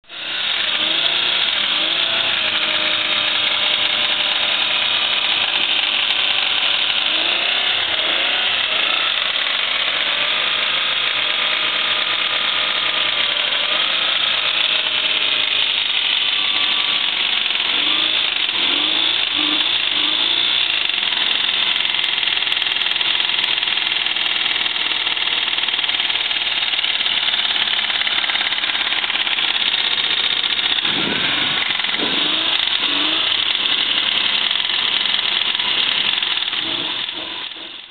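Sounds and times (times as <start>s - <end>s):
engine running with rod knock: 0.1s - 37.9s.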